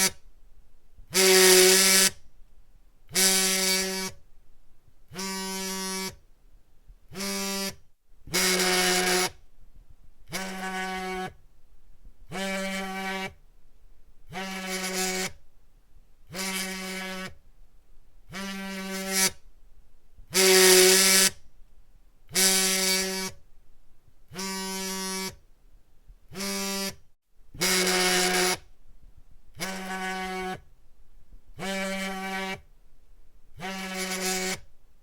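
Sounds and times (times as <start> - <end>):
phone vibrating buzz: 0.0 - 0.2, 1.1 - 2.3, 3.1 - 4.2, 5.1 - 6.2, 7.1 - 9.5, 10.2 - 11.4, 12.2 - 13.4, 14.2 - 15.4, 16.3 - 17.4, 18.3 - 19.4, 20.3 - 21.5, 22.3 - 23.4, 24.3 - 25.4, 26.3 - 28.7, 29.5 - 30.7, 31.5 - 32.7, 33.5 - 34.7.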